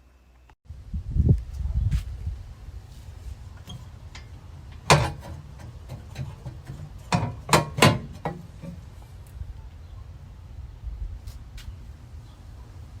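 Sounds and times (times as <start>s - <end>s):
sharp knocks and clanks: 3.6s - 8.8s.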